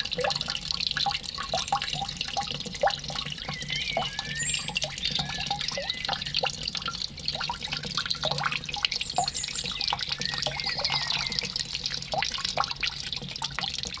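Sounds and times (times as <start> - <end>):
water dripping and trickling: 0.0 - 14.0
bird chirps and whistles: 3.4 - 6.4, 9.1 - 11.5.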